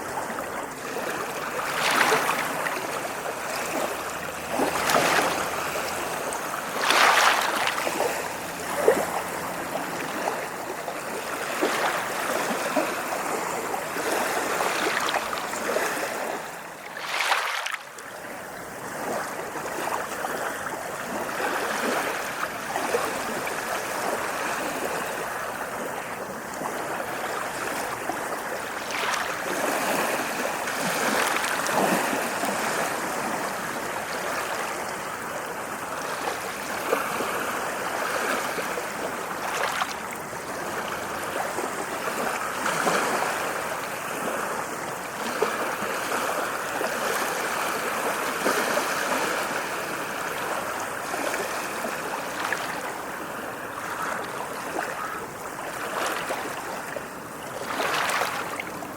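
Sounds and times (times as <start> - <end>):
ocean waves washing onto shore: 0.0 - 58.9.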